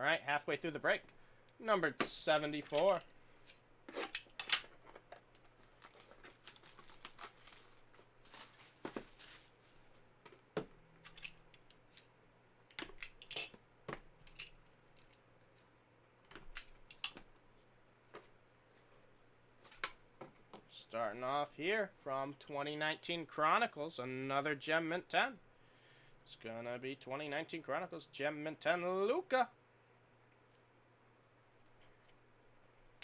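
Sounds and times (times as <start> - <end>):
packaging rustling: 3.9 - 10.4.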